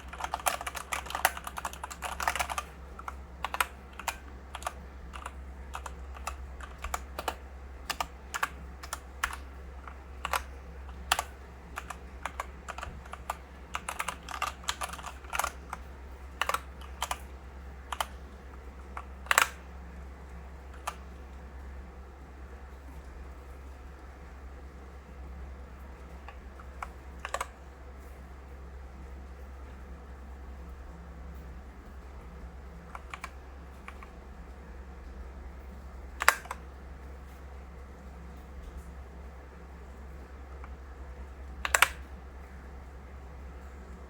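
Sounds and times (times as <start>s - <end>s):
typing on mechanical keyboard: 0.0s - 19.7s, 20.6s - 21.2s, 26.0s - 27.6s, 32.8s - 34.2s, 36.2s - 36.7s, 41.4s - 42.2s.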